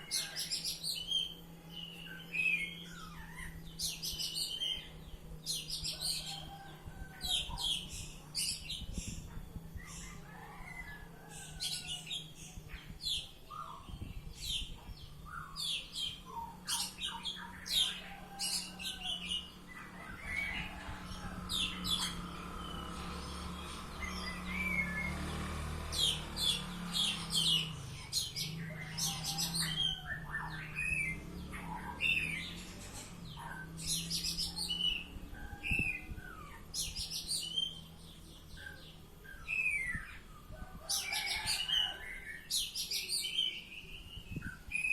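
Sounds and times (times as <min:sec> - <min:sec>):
songbird chirping and whistling: 0:33.3 - 0:44.9.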